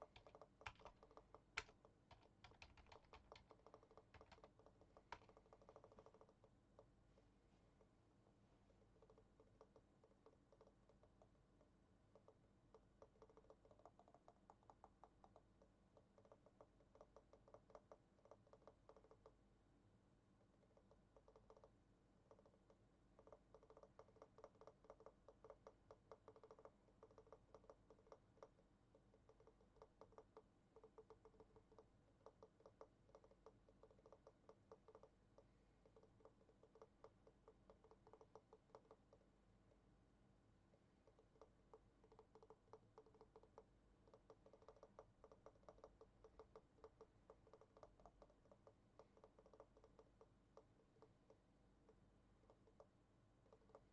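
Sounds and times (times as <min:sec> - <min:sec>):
typing on computer keyboard: 0:00.0 - 0:06.9, 0:12.1 - 0:19.4, 0:20.6 - 0:39.3, 0:41.0 - 0:53.9.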